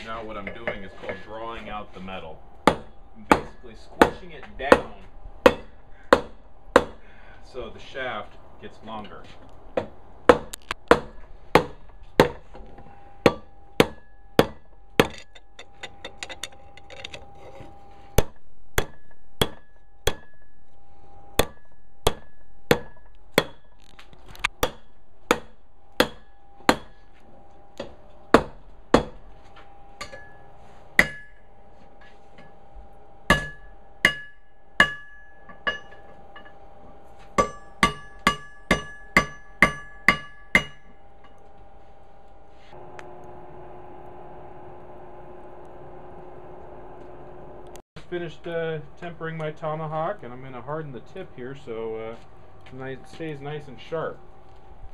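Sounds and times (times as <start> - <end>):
hammer striking steel on anvil: 2.6 - 7.0, 13.2 - 15.9, 18.2 - 20.6, 21.4 - 23.7, 24.6 - 27.0, 27.8 - 29.2, 30.0 - 31.5, 33.3 - 36.6, 37.3 - 41.4.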